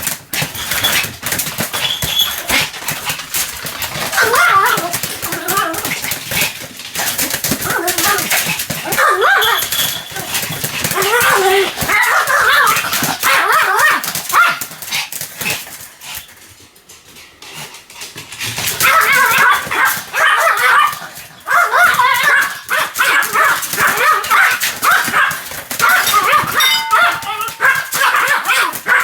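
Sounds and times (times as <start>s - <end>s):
small dog barking rapidly: 4.0s - 5.8s, 7.6s - 10.4s, 11.0s - 14.7s, 18.8s - 29.0s.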